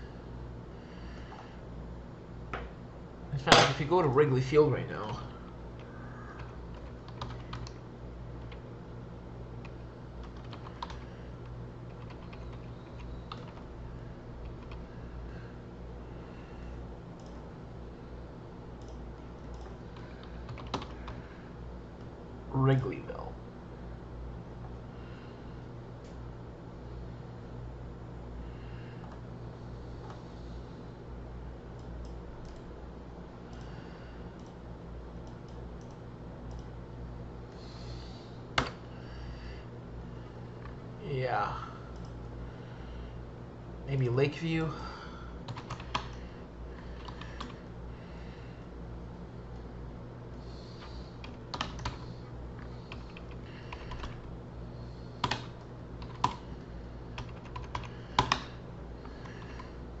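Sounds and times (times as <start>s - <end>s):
low electrical hum: 0.0s - 60.0s
computer keyboard typing: 5.8s - 7.8s, 9.6s - 11.1s, 11.9s - 13.7s, 14.4s - 14.8s, 18.8s - 21.2s, 45.5s - 46.2s, 47.0s - 47.6s, 51.2s - 52.0s, 52.9s - 54.2s, 55.2s - 56.4s, 57.2s - 59.7s.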